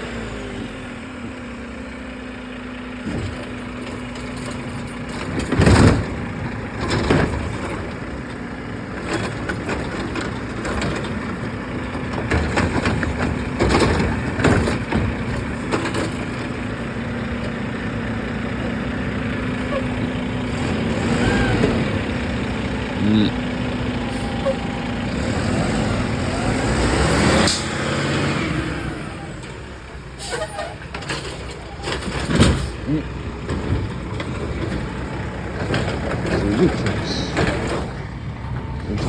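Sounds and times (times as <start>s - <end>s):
garbage truck engine running: 0.0s - 39.0s
trash cans banging and clattering: 3.1s - 8.2s, 8.9s - 17.0s.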